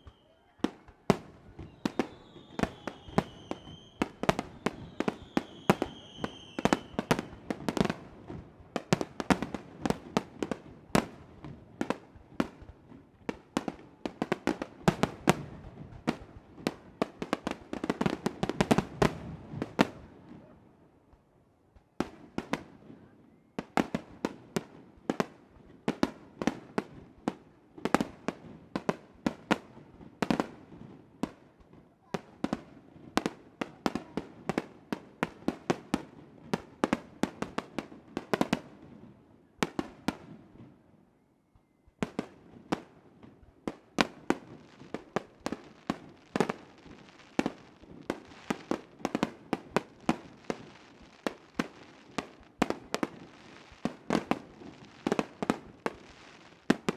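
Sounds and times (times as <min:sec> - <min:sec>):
fireworks bursting: 0:00.0 - 0:20.5, 0:43.7 - 0:56.9.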